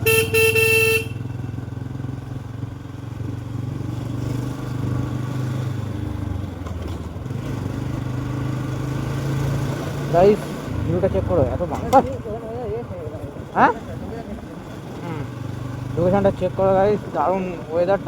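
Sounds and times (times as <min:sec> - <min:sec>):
motorcycle horn: 0:00.0 - 0:01.7
motorcycle engine running: 0:00.0 - 0:18.0.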